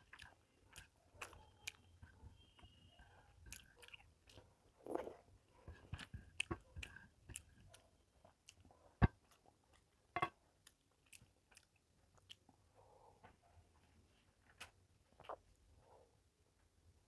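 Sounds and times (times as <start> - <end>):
person chewing with lip smacks: 0.0 - 2.8, 3.4 - 9.9, 10.6 - 12.5.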